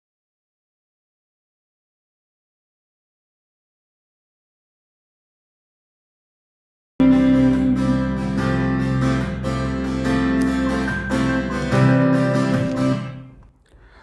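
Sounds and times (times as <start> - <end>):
song with acoustic guitar and bass: 7.0 - 13.4.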